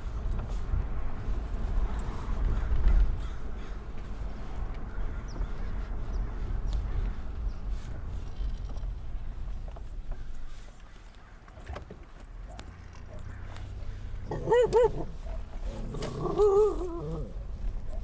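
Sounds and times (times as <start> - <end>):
dog barking harshly: 14.2 - 17.4.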